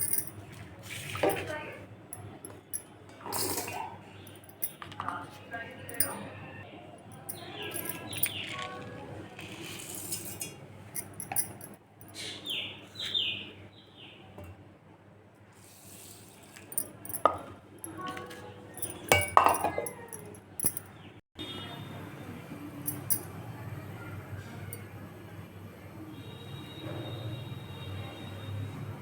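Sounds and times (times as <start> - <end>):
metal utensils clinking: 0.0 - 0.4, 1.0 - 5.0, 5.9 - 6.3, 7.1 - 9.0, 9.6 - 11.8, 16.5 - 20.9, 22.8 - 23.3.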